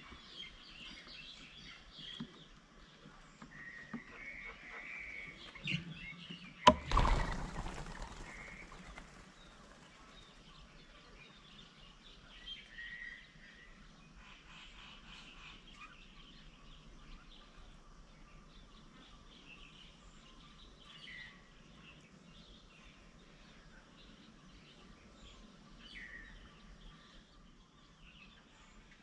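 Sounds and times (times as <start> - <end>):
faint birds chirping: 0.0 - 29.0.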